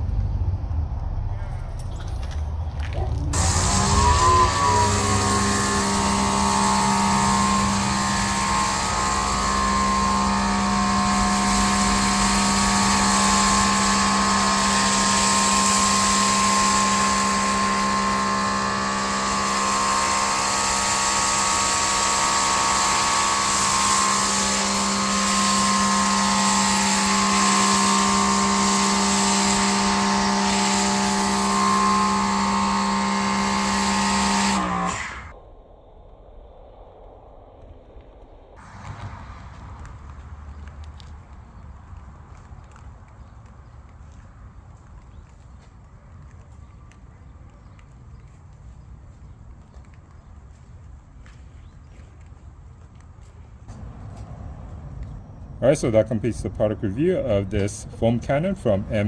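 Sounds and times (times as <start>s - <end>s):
pressure washer motor humming: 3.3s - 35.3s, 38.6s - 43.8s.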